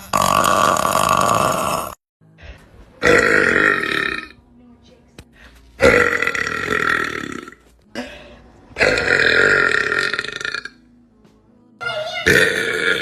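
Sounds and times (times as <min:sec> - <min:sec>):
woman burping: 0:03.0 - 0:04.4, 0:05.8 - 0:08.2, 0:08.8 - 0:10.8, 0:12.2 - 0:13.0.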